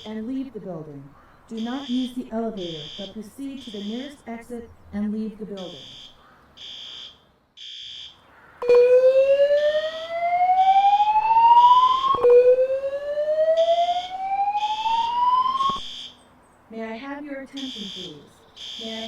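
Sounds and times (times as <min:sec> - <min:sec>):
spoken messages: 0:00.0 - 0:06.1, 0:16.7 - 0:19.0
fire alarm whoop tone: 0:05.7 - 0:16.1.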